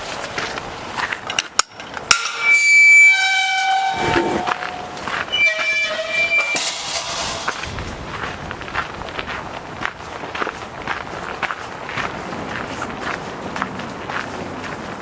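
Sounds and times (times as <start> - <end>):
train horn blasts: 2.5 - 6.8
footsteps on trail: 7.4 - 15.0.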